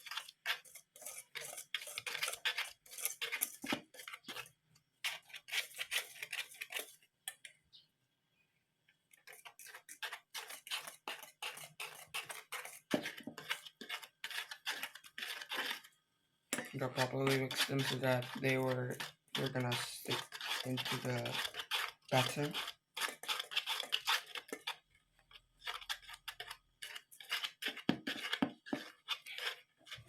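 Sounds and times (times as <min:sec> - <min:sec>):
whisk clicking against bowl: 0:09.3 - 0:15.8, 0:16.6 - 0:24.8.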